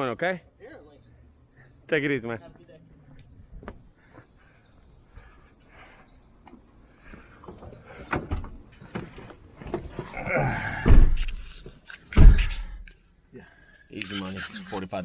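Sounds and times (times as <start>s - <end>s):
vehicle doors slamming: 10.5s - 12.9s.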